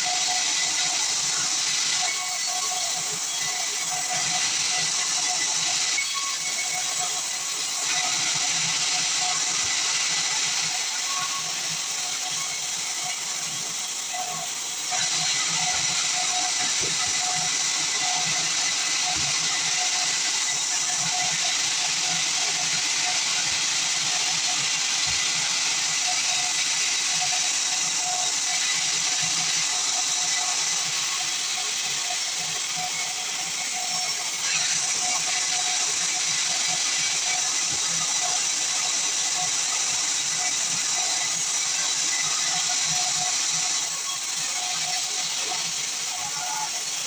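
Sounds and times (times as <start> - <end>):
band saw cutting log: 0.0 - 47.0.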